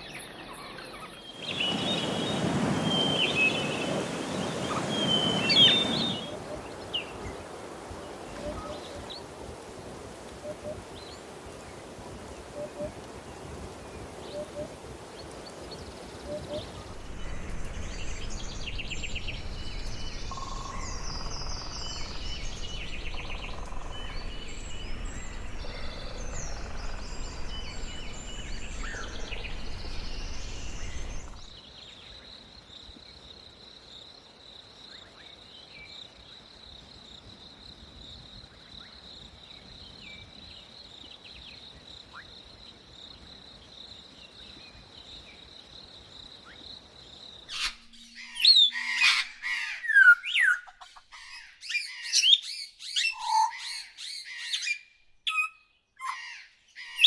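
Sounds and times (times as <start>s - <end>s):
birds chirping and trilling: 0.0s - 31.8s, 46.4s - 57.0s
low rumble: 16.9s - 31.5s.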